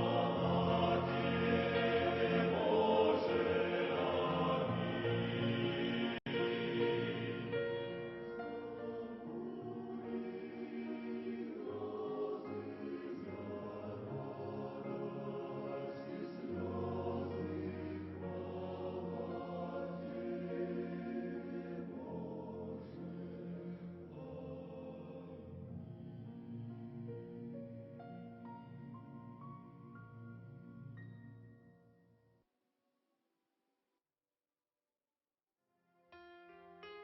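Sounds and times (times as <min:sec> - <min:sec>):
choir singing a hymn: 0:00.0 - 0:26.5.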